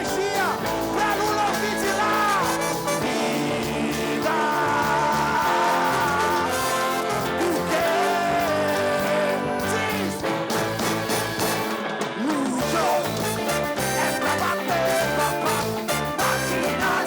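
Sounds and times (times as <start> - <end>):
band playing a song: 0.0 - 17.0.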